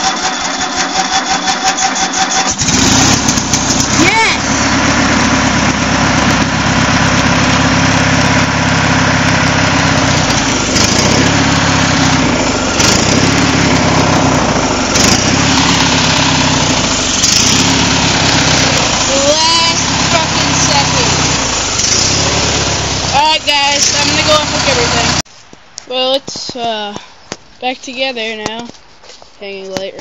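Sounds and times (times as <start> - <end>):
riding tractor engine running: 0.0 - 25.3.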